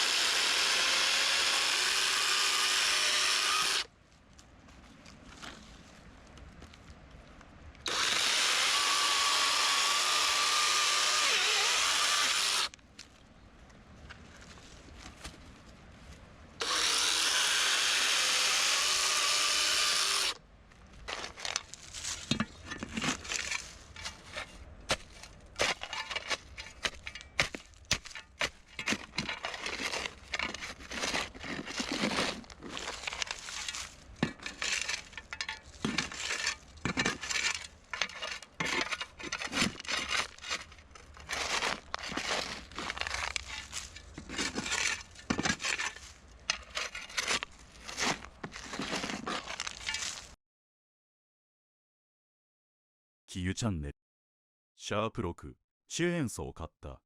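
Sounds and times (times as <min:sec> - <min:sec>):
chainsaw cutting wood: 0:00.0 - 0:03.9, 0:07.9 - 0:12.8, 0:16.6 - 0:20.4.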